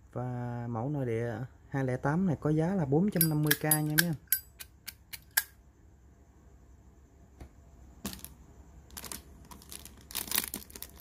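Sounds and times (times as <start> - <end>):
rustling: 8.9 - 11.0.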